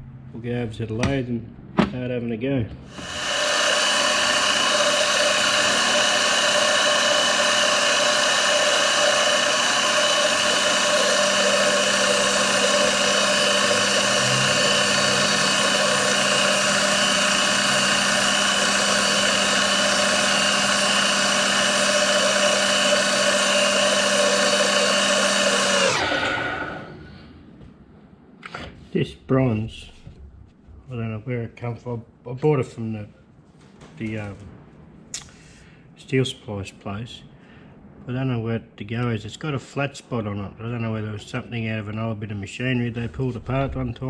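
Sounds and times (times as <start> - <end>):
electric motor whining: 2.9 - 27.2.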